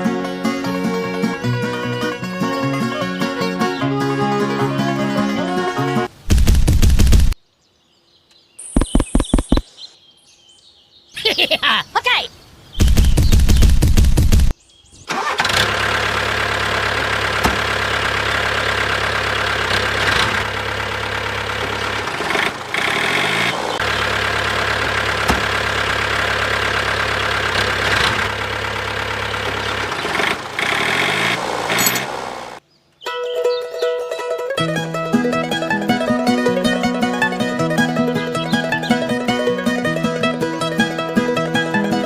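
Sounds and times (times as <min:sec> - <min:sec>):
loud rattling burst: 0:12.8 - 0:14.5, 0:15.2 - 0:32.6.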